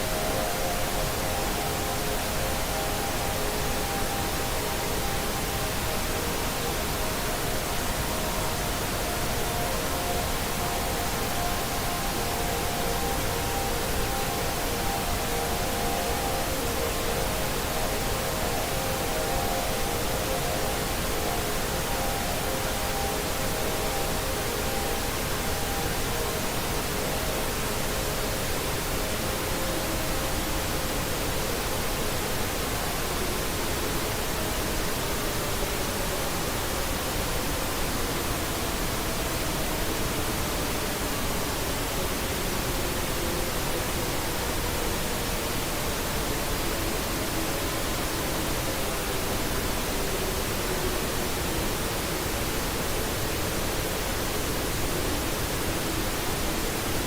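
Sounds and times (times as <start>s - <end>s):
static hiss: 0.0s - 57.0s.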